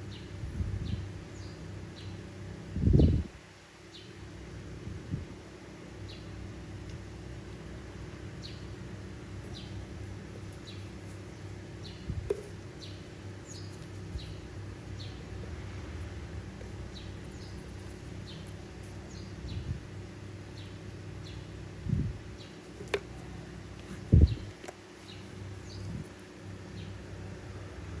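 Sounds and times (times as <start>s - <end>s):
bird chirping: 12.8s - 15.2s, 16.9s - 19.8s, 24.1s - 26.0s.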